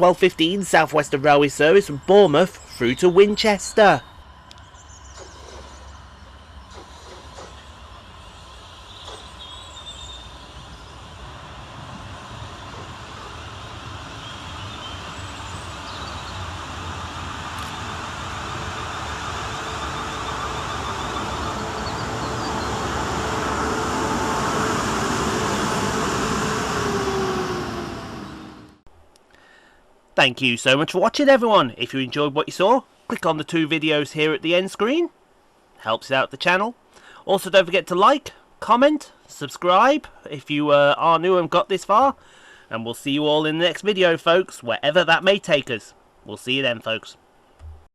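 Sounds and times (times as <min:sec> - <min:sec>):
electric train motor whine: 0:04.0 - 0:28.8.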